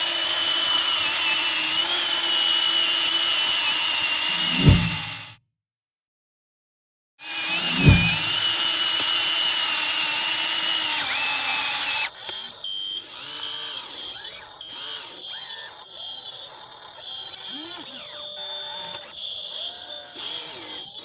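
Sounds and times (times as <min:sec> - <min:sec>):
toy excavator motor whining: 0:00.0 - 0:05.4, 0:07.2 - 0:21.0
thump: 0:04.4 - 0:05.4, 0:07.7 - 0:08.4.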